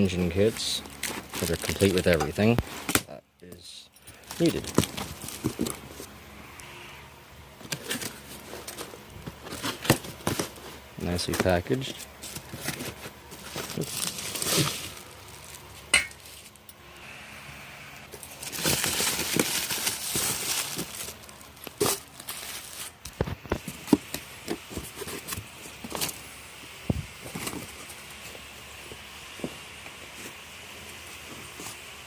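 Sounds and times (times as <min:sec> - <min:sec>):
packaging rustling and scraping: 0:00.0 - 0:03.1, 0:04.0 - 0:06.2, 0:07.5 - 0:16.7, 0:18.0 - 0:26.3, 0:26.9 - 0:32.0
metal parts clinking: 0:03.5 - 0:05.6.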